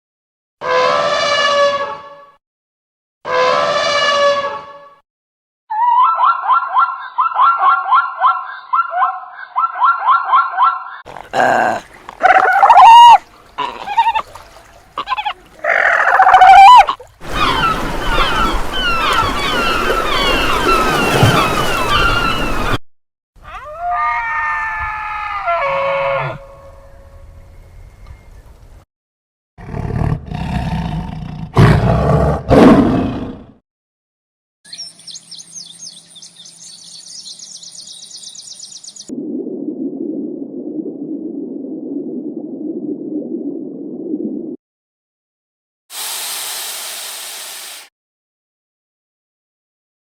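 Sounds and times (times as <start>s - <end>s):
drawn-out falling animal call: 11.0s - 22.8s.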